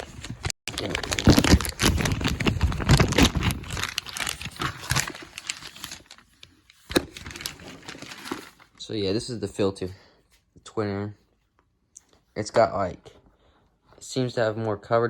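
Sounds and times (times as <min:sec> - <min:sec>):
rustling and clicking handling: 0:00.0 - 0:08.9.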